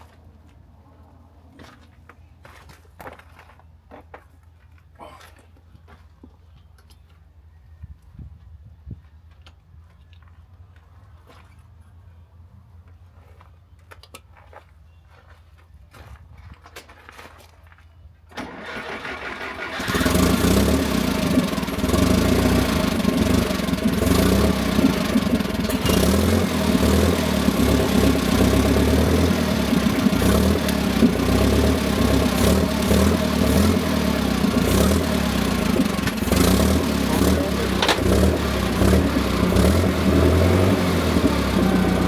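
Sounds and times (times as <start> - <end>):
engine starting and idling roughly: 18.3 - 42.0.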